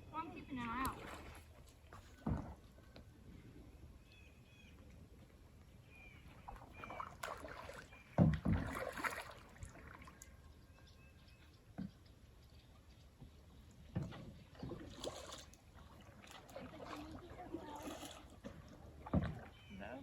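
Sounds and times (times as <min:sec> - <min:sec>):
water sloshing around boat: 0:00.0 - 0:03.7, 0:04.6 - 0:10.8, 0:13.1 - 0:20.0
paddle strokes: 0:00.1 - 0:02.7, 0:06.2 - 0:10.2, 0:13.8 - 0:20.0.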